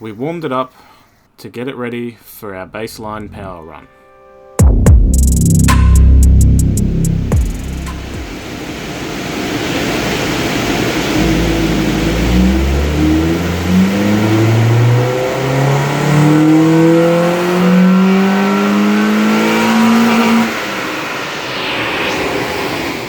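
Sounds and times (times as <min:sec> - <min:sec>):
car engine revving at full throttle: 0:05.0 - 0:23.0.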